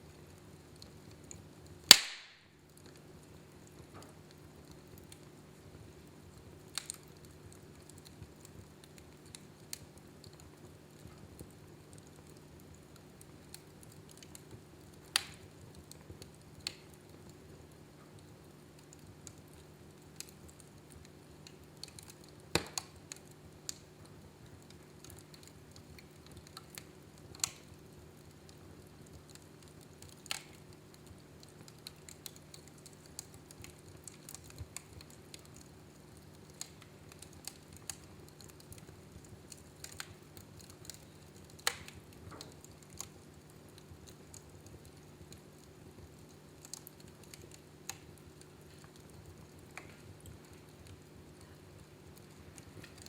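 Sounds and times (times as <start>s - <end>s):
wood fire crackling and popping: 0.0s - 53.0s.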